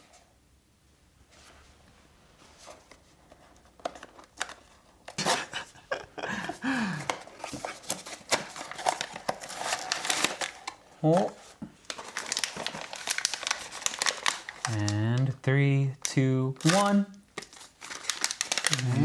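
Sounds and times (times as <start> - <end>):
packaging clicking and rustling: 2.8 - 5.4, 6.4 - 15.0, 16.6 - 19.0.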